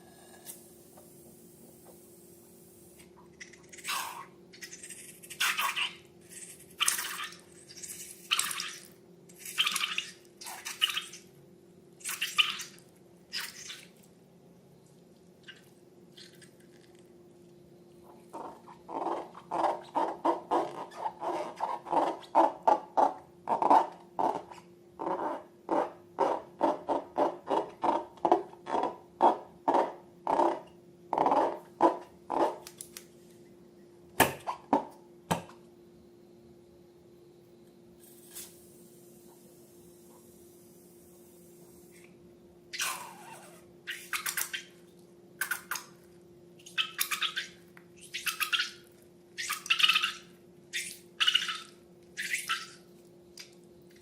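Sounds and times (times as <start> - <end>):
slime squelching: 3.4 - 11.3, 12.0 - 14.1.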